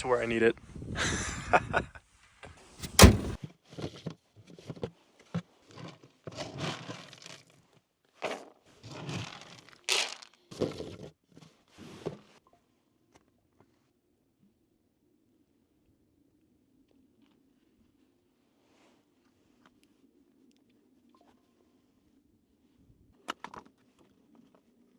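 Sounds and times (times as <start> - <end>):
truck hood slamming shut: 2.8 - 3.4.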